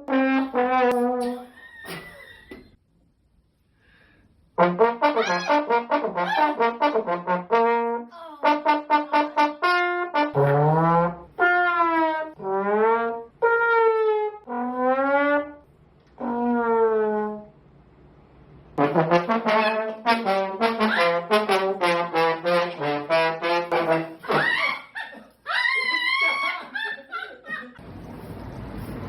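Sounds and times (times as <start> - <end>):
comic brass instrument notes: 0.0 - 1.6, 4.6 - 17.6, 18.8 - 24.8.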